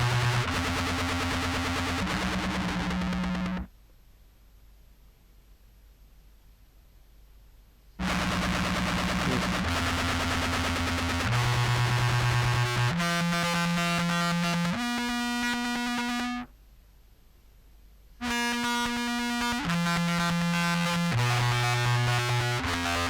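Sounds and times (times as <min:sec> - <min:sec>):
fuzzed clarinet notes: 0:08.0 - 0:10.0.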